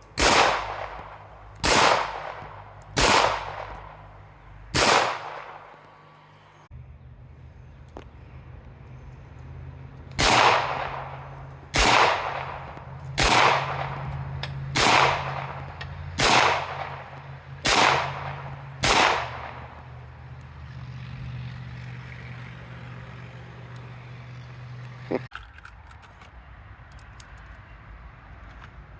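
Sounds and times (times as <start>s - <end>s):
pistol shots with echo: 0.2s - 5.7s, 10.2s - 14.1s, 14.7s - 19.8s.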